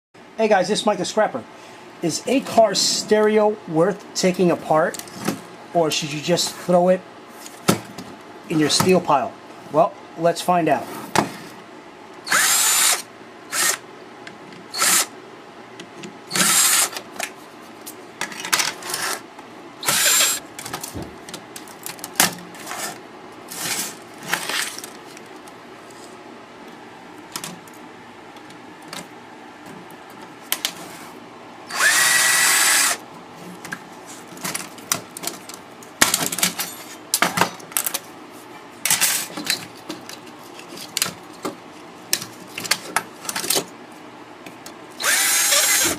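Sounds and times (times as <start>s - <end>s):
cordless drill running: 12.3s - 13.8s, 14.7s - 15.1s, 16.3s - 17.0s, 19.8s - 20.4s, 31.7s - 33.0s, 45.0s - 45.9s
clicks and knocks of parts: 16.9s - 19.0s, 27.3s - 27.8s, 33.6s - 38.1s, 38.8s - 43.7s.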